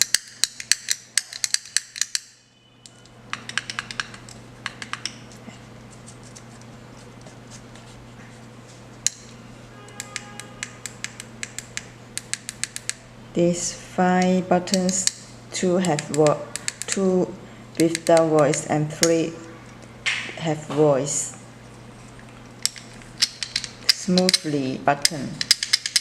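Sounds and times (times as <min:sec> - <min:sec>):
fidget cube buttons clicking: 0:00.0 - 0:02.3, 0:02.9 - 0:05.2, 0:14.2 - 0:17.2, 0:17.8 - 0:19.3
steady low hum: 0:00.0 - 0:26.0.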